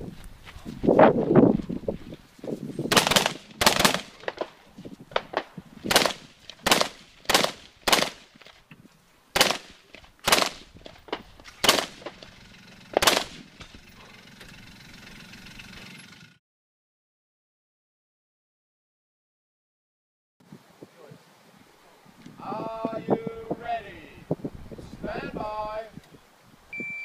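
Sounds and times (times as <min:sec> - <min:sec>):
rifle shots with echo: 0:02.9 - 0:04.6, 0:05.9 - 0:08.3, 0:09.4 - 0:12.2, 0:12.9 - 0:13.5.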